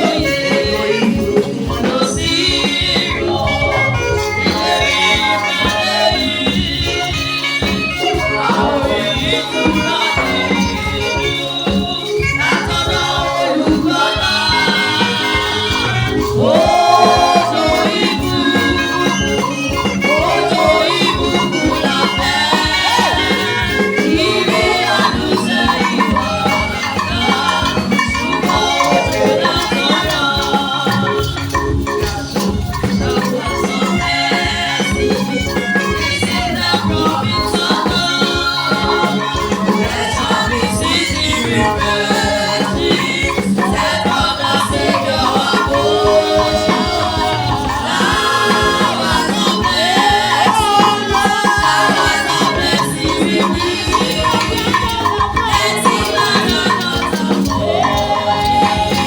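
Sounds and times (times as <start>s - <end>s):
shaker rattling: 0.0s - 59.0s
voices singing over a band: 0.0s - 59.0s.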